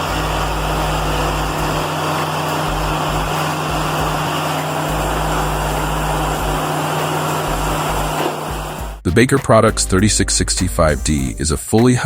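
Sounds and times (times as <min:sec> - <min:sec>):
sawmill machine hum: 0:00.0 - 0:09.0.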